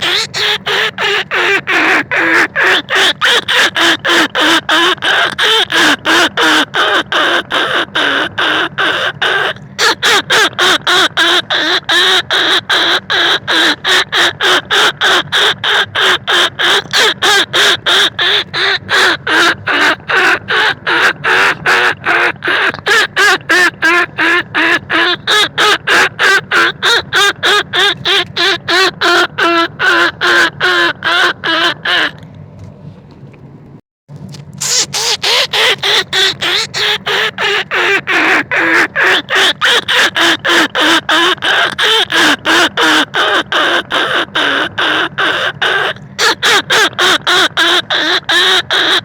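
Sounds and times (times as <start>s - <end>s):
squawky rat lure calls: 0.0s - 13.7s, 34.3s - 43.0s.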